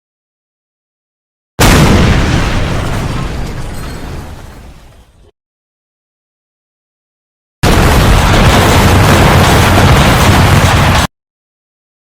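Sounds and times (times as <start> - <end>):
loud dense crashing: 1.6 - 4.9, 7.6 - 11.1.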